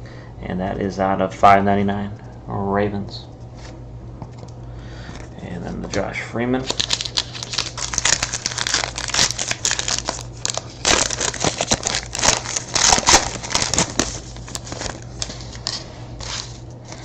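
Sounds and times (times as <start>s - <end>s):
wrapper crinkling and tearing: 6.6s - 17.0s.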